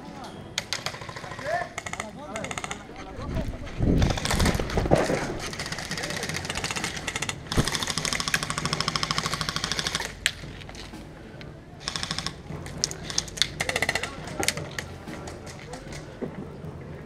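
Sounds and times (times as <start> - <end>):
airsoft guns firing bursts: 0.6 - 2.9, 4.0 - 10.2, 11.8 - 15.6.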